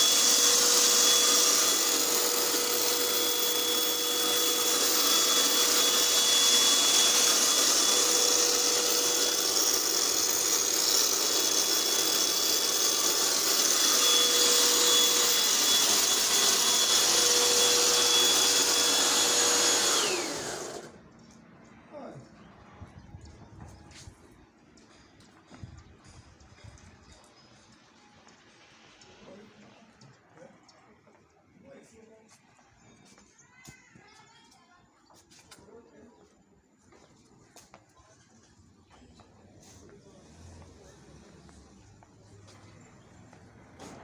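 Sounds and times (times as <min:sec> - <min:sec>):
electric motor whining: 0:00.0 - 0:21.0.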